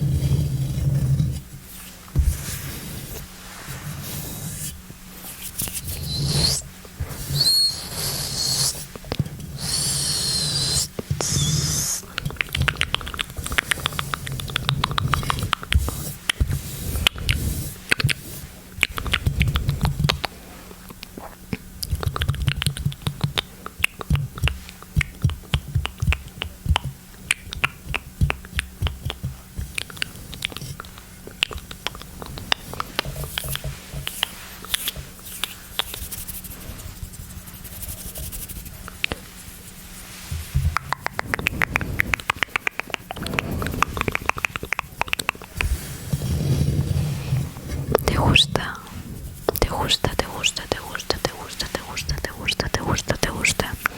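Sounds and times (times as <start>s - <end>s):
wet mouth clicks and smacks: 12.1s - 15.7s, 21.0s - 32.9s, 40.7s - 45.7s.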